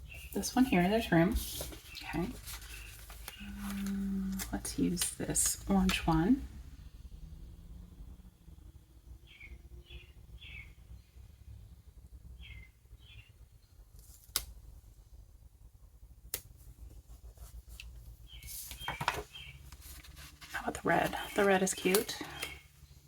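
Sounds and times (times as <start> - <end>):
rustling: 0.0 - 6.2, 16.7 - 22.6
faint bird chirps: 9.2 - 13.8, 20.8 - 23.0.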